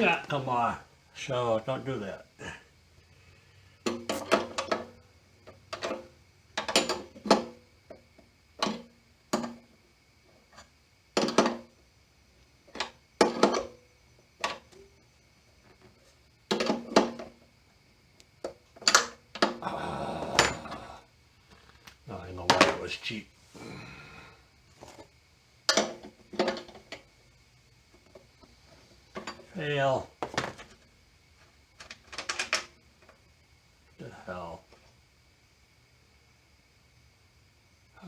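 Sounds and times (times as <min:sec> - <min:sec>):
metal clinks and knocks: 0:05.7 - 0:08.0.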